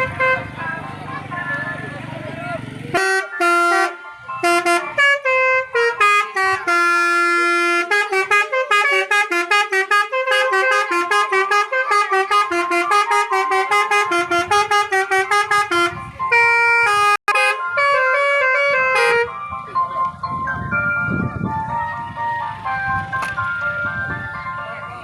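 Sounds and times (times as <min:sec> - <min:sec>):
musical air horn playing a tune: 0:00.0 - 0:00.5, 0:03.0 - 0:19.4.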